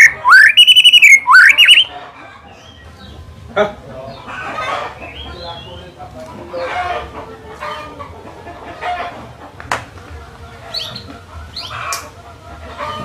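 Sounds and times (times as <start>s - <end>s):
high bird chirps: 0.0s - 1.9s
birds clucking calls: 0.0s - 3.3s, 4.0s - 13.0s.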